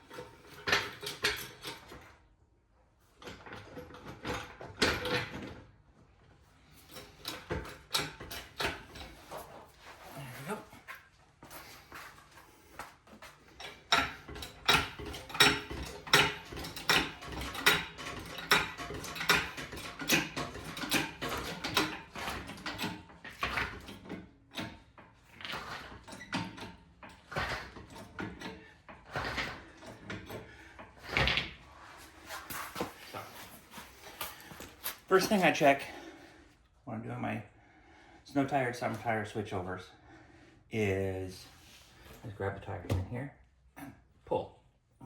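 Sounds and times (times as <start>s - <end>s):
car jack clicking and clanking: 0.0s - 2.2s, 3.2s - 5.8s, 6.6s - 9.6s, 13.2s - 31.6s.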